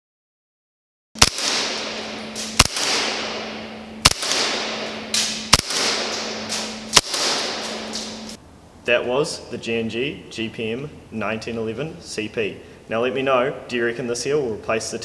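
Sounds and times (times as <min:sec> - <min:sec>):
airsoft pistol shots: 0:01.2 - 0:08.4
low steady hum: 0:01.2 - 0:13.9.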